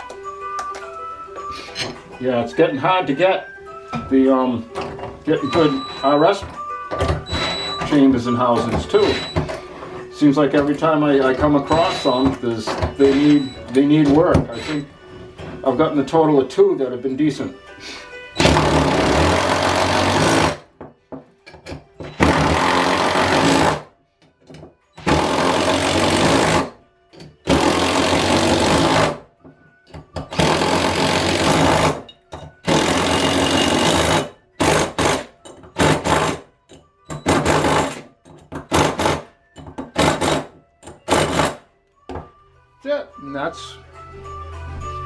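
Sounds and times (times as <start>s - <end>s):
power driver running in bursts: 18.4s - 20.6s.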